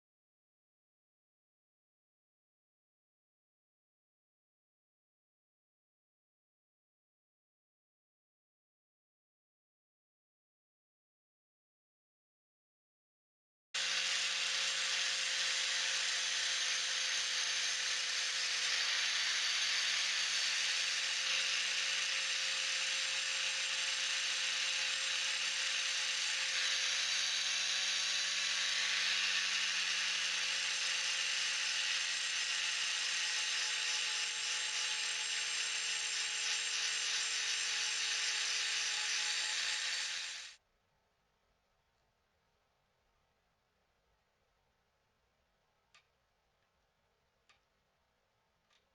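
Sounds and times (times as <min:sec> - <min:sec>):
angle grinder grinding metal: 0:13.8 - 0:40.6.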